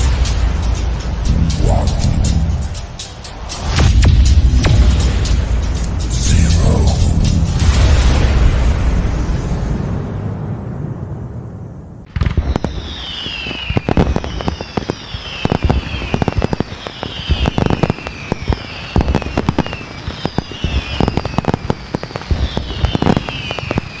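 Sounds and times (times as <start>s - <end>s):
fireworks bangs and crackles: 0.0s - 11.1s, 12.0s - 24.0s
falling firework whistle: 12.1s - 24.0s.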